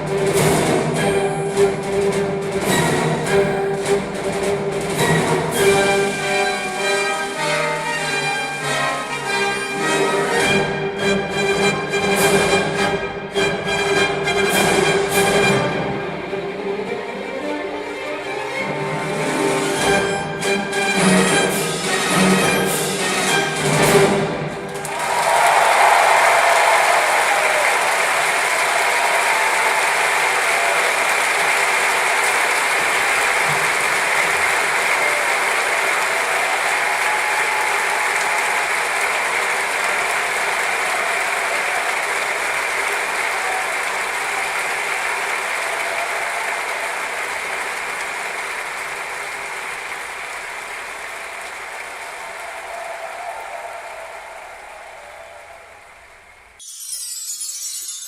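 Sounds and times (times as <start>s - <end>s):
audience applause: 21.0s - 56.6s.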